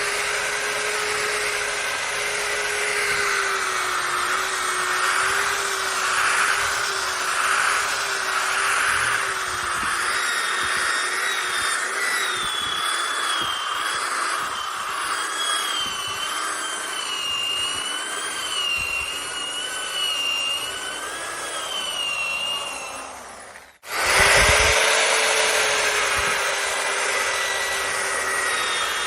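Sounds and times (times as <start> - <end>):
electric polisher motor whining: 0.0 - 29.0.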